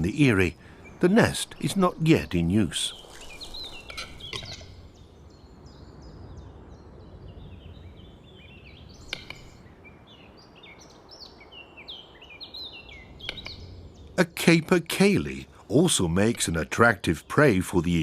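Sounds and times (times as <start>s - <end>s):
songbirds chirping: 0.0s - 18.0s
sharp click: 9.0s - 9.5s.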